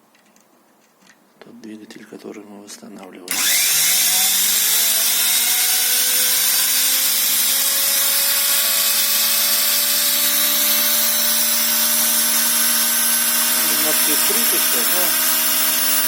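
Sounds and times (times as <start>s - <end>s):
electric motor whining: 3.3s - 16.0s.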